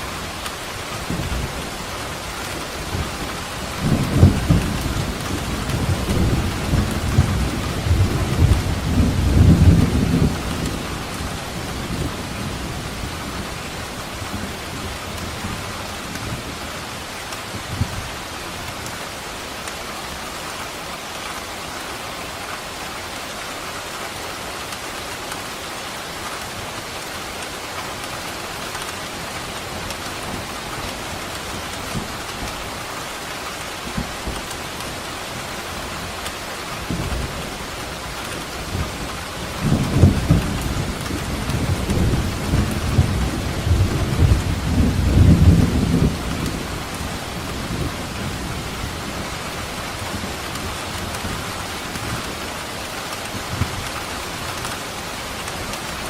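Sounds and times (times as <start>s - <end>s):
heavy rain falling: 0.0s - 56.0s
thunder rumbling: 1.0s - 15.6s, 36.8s - 54.4s.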